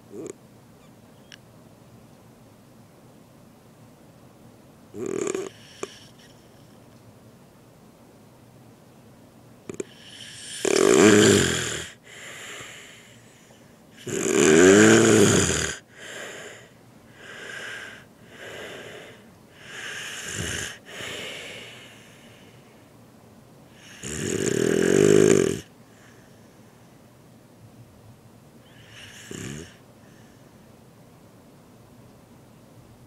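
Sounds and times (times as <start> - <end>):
loud snoring: 5.0 - 6.4, 9.7 - 12.9, 14.0 - 16.6, 17.2 - 21.8, 23.8 - 25.7, 28.7 - 29.8
soft breathing: 12.0 - 13.8, 15.8 - 22.9, 25.7 - 27.1, 28.6 - 30.8.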